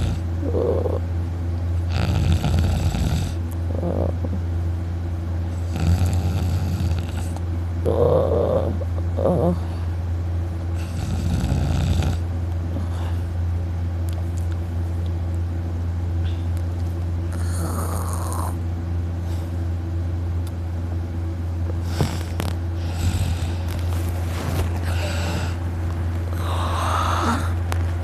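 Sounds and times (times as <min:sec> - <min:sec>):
man snoring loudly: 0:00.0 - 0:01.0, 0:01.9 - 0:04.4, 0:05.6 - 0:09.6, 0:10.8 - 0:12.2, 0:17.3 - 0:18.6, 0:21.9 - 0:23.7, 0:24.8 - 0:25.6, 0:26.3 - 0:27.6
steady low hum: 0:00.0 - 0:28.0.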